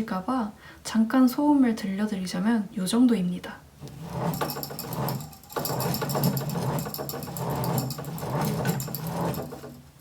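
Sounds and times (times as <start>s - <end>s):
yarn winder whirring: 3.8s - 10.0s.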